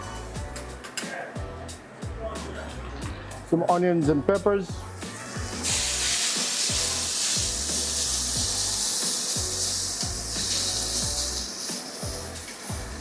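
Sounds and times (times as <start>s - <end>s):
background music with a beat: 0.0s - 13.0s
vegetables sizzling in a pan: 4.8s - 13.0s.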